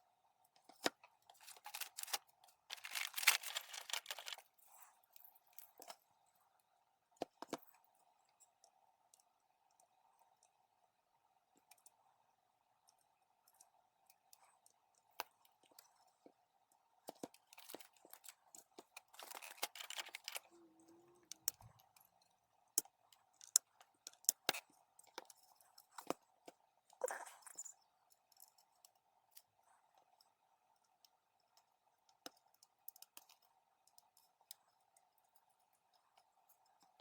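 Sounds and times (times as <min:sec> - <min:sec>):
faint steady hum: 0:00.0 - 0:37.0
rustling and scraping: 0:01.3 - 0:06.0.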